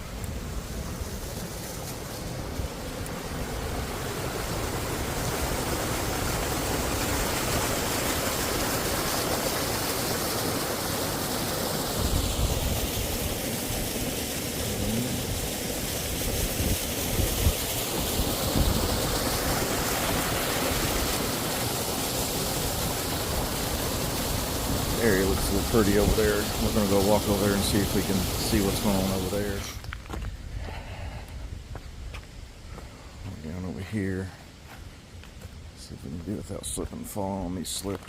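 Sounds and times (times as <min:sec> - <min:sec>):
small waterfall rushing: 0:00.0 - 0:31.8.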